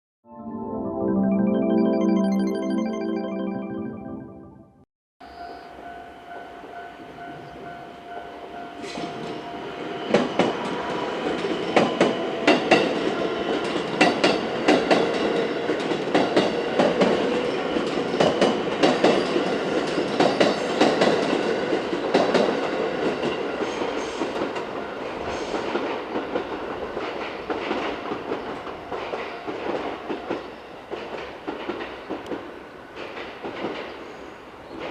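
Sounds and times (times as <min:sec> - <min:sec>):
train wheels clacking over rails: 0:08.8 - 0:34.9.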